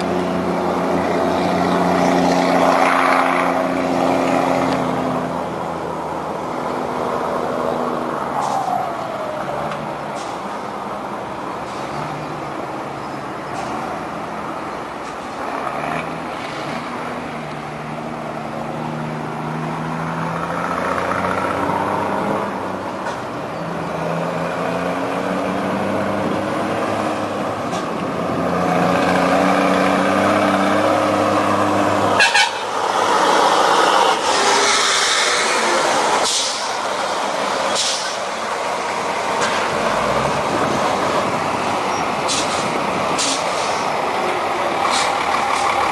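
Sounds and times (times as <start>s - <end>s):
vehicle engine accelerating: 15.5s - 22.8s, 23.7s - 45.9s
short sharp hiss: 36.2s - 36.8s.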